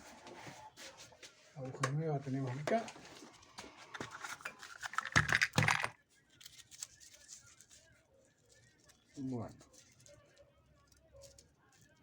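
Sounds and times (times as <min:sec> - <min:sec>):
small objects clicking and rattling: 0:04.0 - 0:06.0.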